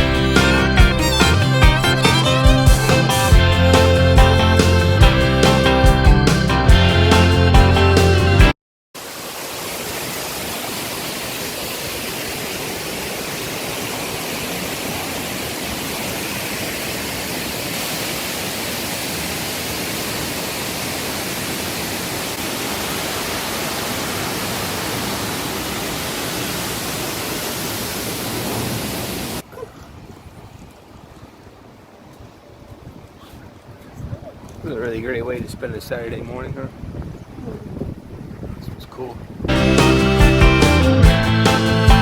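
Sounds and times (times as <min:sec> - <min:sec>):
waterfall rushing: 0:00.0 - 0:05.9, 0:09.0 - 0:29.4.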